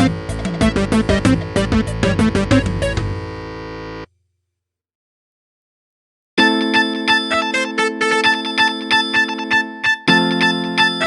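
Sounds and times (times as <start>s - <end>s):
synthesized phone ringtone: 6.4s - 11.0s.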